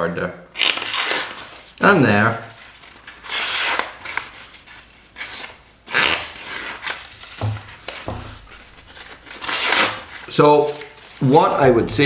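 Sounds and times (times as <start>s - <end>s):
dull knocks: 7.3s - 9.4s, 11.6s - 12.0s.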